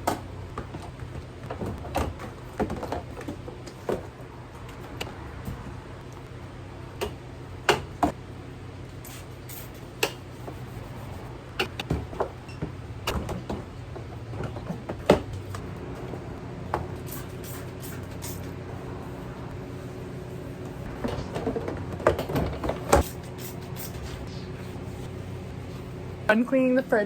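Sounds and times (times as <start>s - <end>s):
steady low hum: 0.0s - 27.0s
containers and drawers clattering: 21.0s - 23.2s.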